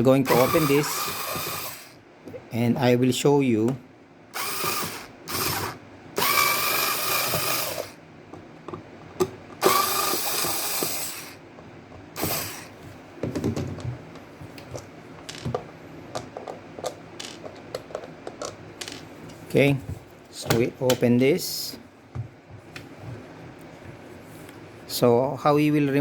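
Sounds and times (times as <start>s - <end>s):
electric screwdriver running: 0.3s - 2.0s, 4.4s - 8.0s, 9.6s - 11.4s, 12.2s - 12.7s.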